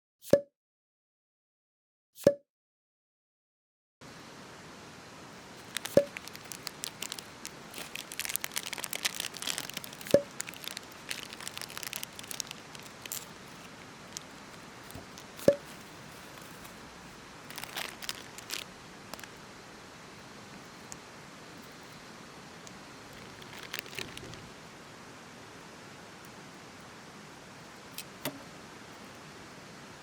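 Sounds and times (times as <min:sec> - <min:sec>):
crackling and crinkling: 0:05.4 - 0:19.4, 0:22.6 - 0:24.6.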